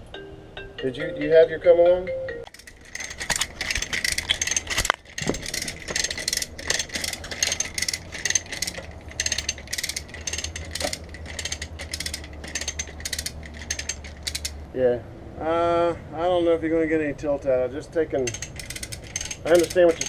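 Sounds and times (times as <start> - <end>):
hoist ratchet clicking: 2.5 - 14.6, 18.2 - 20.0.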